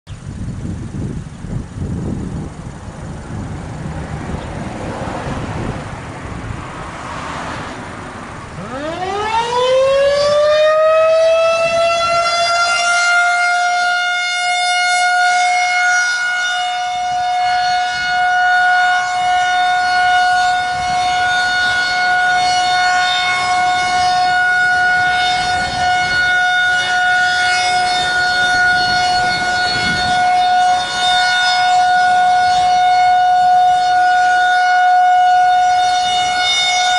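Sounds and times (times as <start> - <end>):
traffic noise: 0.1 - 36.9
outdoor warning siren winding up: 8.6 - 36.9.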